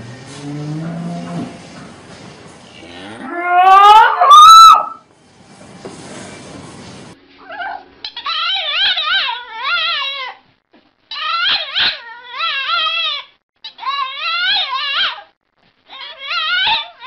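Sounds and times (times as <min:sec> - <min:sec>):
dog whine-howling: 0:03.2 - 0:05.0, 0:07.4 - 0:10.3.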